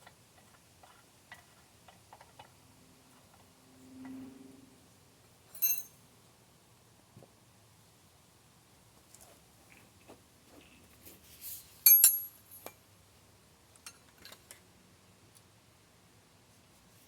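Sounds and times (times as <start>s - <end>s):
metal tools clinking: 5.5s - 6.0s, 11.8s - 12.8s
loud ringing metallic clink: 5.6s - 6.0s, 11.9s - 12.4s.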